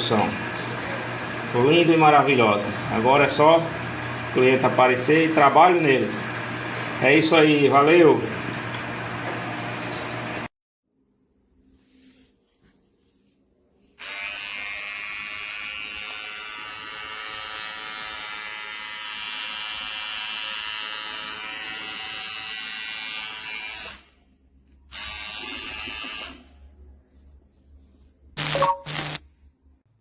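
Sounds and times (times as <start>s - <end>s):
hair trimmer buzzing: 14.0s - 24.0s, 24.9s - 26.4s, 28.4s - 29.2s.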